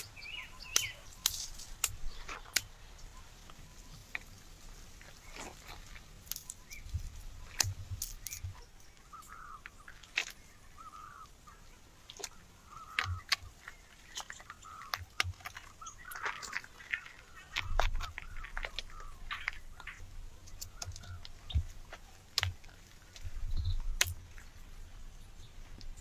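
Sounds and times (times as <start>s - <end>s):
sharp clicks and snaps: 0.0s - 2.8s, 12.1s - 24.4s
bird calling: 0.0s - 26.0s.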